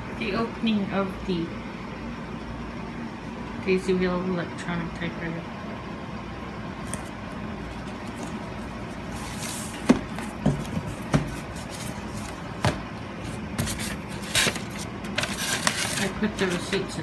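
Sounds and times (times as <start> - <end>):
packaging rustling: 6.9 - 16.9.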